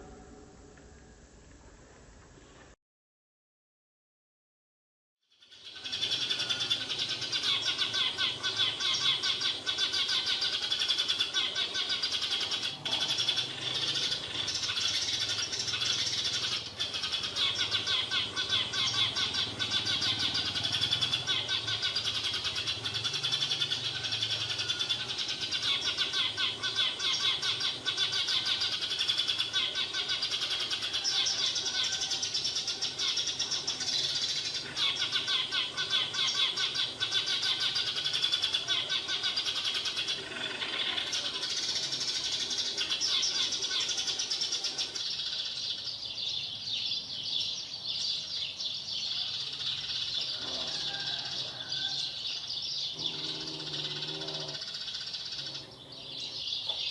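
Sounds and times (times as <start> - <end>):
flock of sparrows chirping: 5.4 - 56.9.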